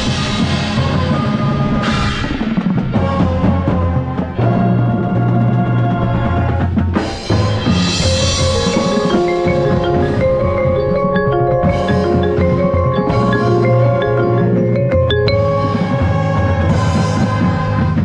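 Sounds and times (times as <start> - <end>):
mallet percussion melody: 7.6 - 17.3.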